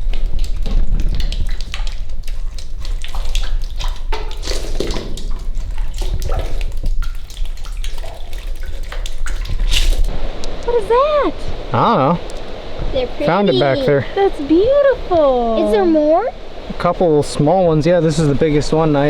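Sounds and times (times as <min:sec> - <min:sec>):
water splashing and trickling: 0:00.0 - 0:19.0
steady low rumble: 0:09.6 - 0:19.0.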